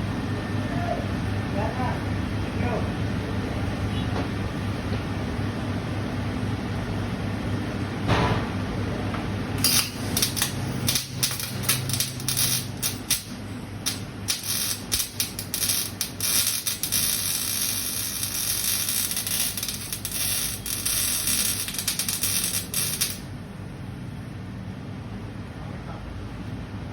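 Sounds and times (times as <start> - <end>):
welding arc crackling: 9.6 - 23.4.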